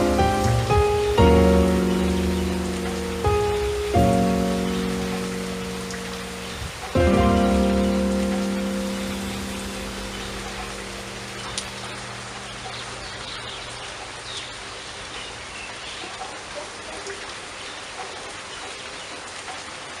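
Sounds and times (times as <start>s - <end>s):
high chirps: 0.0s - 13.9s
steady rain falling: 0.0s - 20.0s.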